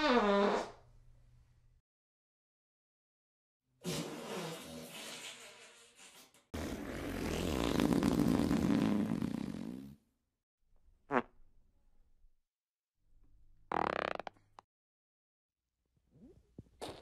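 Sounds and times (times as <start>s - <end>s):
fart sound effects: 0.0s - 0.8s, 3.8s - 5.2s, 6.6s - 10.0s, 11.1s - 11.3s, 13.7s - 14.4s, 16.2s - 17.0s.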